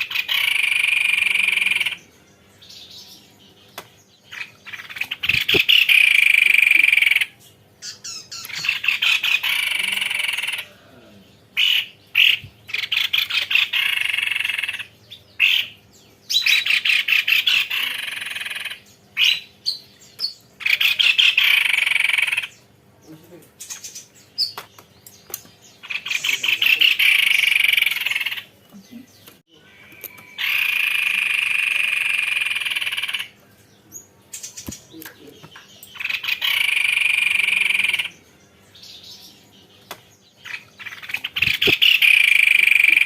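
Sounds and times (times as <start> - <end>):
bird singing rattling trills: 0.0 - 10.7, 11.3 - 43.0.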